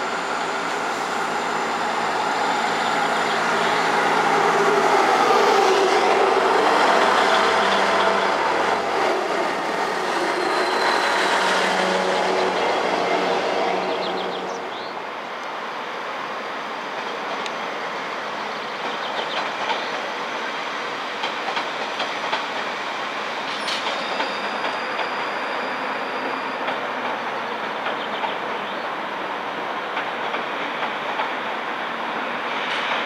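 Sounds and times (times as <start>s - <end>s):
faint high wheel squeals: 10.2s - 11.8s, 23.5s - 27.3s
train wheels clicking over rail joints: 18.8s - 20.2s, 21.1s - 22.7s, 23.5s - 25.2s, 26.2s - 28.6s, 29.8s - 31.6s.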